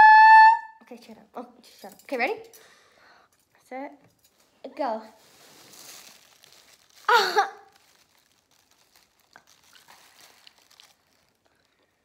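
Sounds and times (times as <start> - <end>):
crinkling and chewing clicks: 5.7 - 12.0
girl's vocal cry: 7.1 - 7.7.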